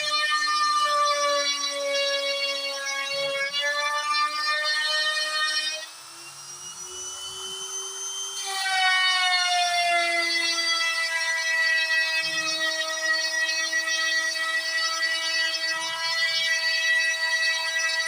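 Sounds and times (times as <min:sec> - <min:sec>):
cnc router motors whining: 0:00.0 - 0:18.0.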